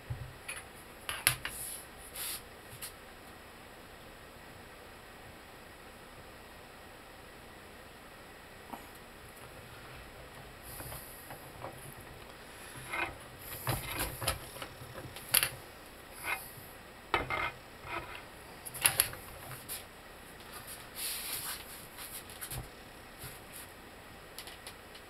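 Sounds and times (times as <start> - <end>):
metal scraping: 10.7 - 15.5.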